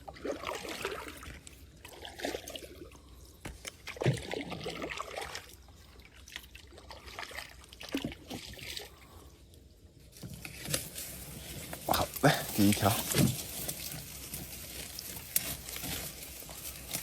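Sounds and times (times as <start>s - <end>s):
water splashing around boat: 0.0s - 9.3s.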